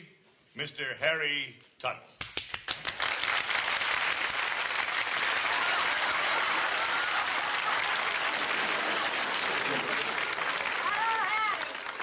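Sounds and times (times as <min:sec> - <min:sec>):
audience applauding: 0:02.2 - 0:12.0.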